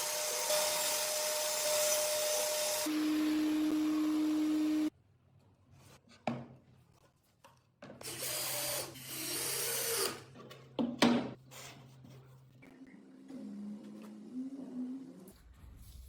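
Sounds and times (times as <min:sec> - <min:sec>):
small power tool running: 0:00.0 - 0:04.9.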